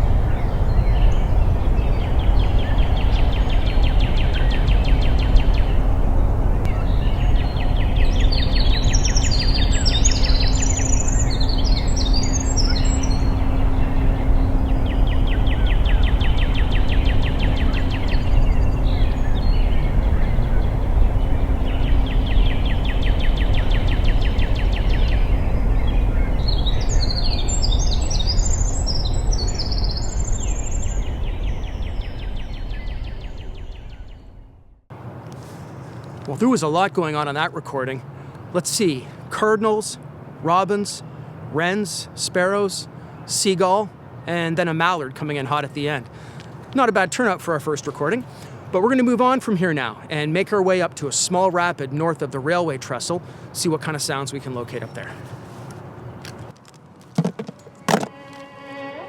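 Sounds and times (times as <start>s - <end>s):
bird trills: 0.0s - 5.9s, 6.6s - 34.5s
birds warbling songs: 0.0s - 34.6s, 35.4s - 56.5s
low rumble of road traffic: 0.0s - 59.0s.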